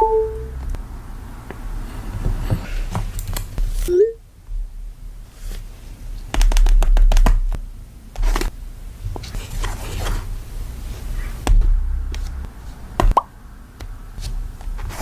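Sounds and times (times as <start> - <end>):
crinkling and scratching handling: 9.1 - 10.3.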